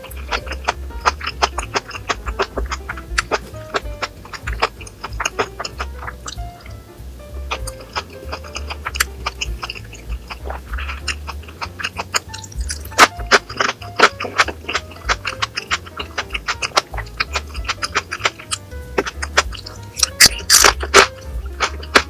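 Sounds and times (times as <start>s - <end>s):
eating and chewing sounds: 0.0s - 6.8s, 7.5s - 22.0s
background music with bass: 0.0s - 22.0s.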